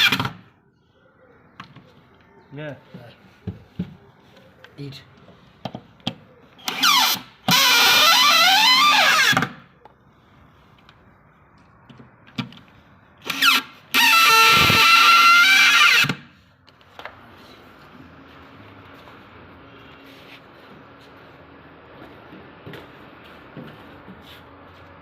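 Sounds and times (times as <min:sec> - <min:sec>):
power tool cutting wood: 0:13.2 - 0:16.2.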